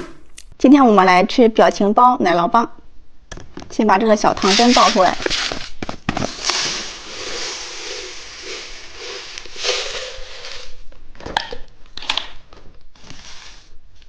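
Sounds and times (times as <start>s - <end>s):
sprinkles pouring rattling hiss: 6.2s - 10.8s.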